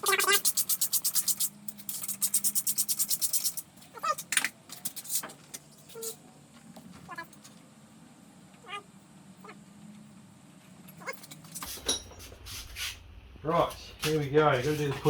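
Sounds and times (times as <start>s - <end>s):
socket ratchet clicking rapidly: 0.1s - 3.6s.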